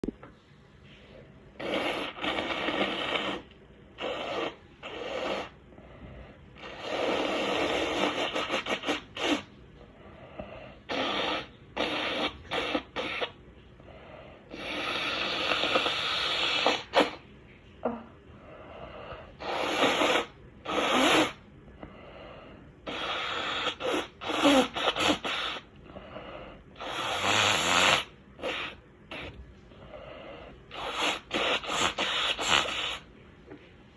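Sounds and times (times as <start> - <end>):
person blowing nose: 1.6 - 5.6, 6.6 - 9.5, 10.8 - 13.4, 14.5 - 17.2, 19.2 - 21.4, 22.8 - 25.7, 26.8 - 33.1.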